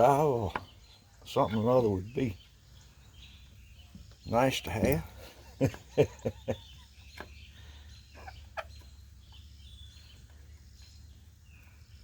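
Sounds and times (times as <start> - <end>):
chicken clucking: 5.2 - 10.4.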